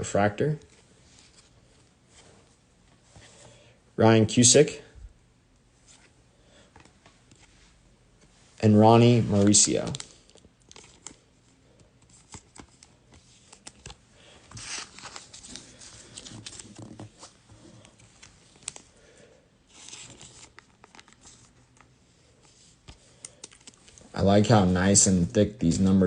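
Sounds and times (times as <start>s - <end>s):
trading cards clicking and rustling: 9.0s - 18.9s, 22.9s - 24.2s.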